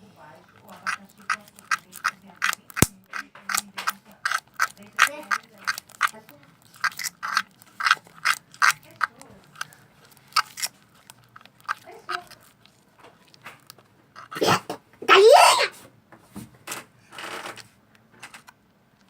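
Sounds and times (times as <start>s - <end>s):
slime squelching: 0.5s - 15.7s.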